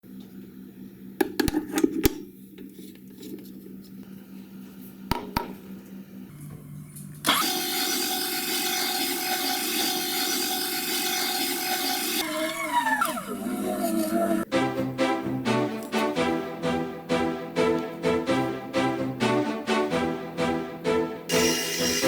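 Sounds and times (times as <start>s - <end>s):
meat grinder motor whirring: 6.5s - 14.5s, 21.3s - 22.0s.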